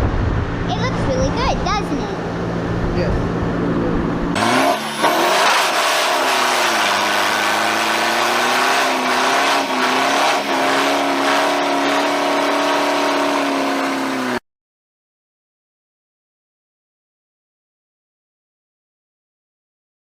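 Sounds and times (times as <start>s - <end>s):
car engine accelerating: 0.0s - 14.4s.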